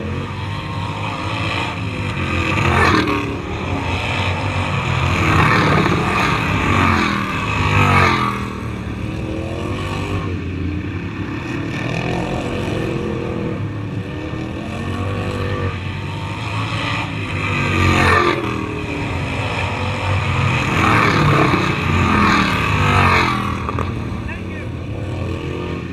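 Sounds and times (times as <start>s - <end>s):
racing lawn mower engines passing: 0.0s - 25.9s.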